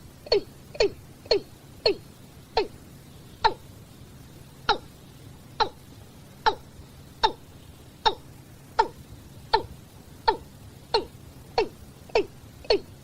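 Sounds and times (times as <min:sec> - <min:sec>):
bird giving short hoarse calls: 0:00.2 - 0:03.7, 0:05.6 - 0:05.8, 0:06.4 - 0:13.0.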